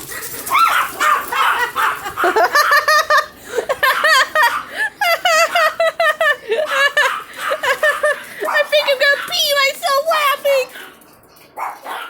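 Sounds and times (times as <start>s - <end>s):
person laughing hard: 1.7s - 8.4s.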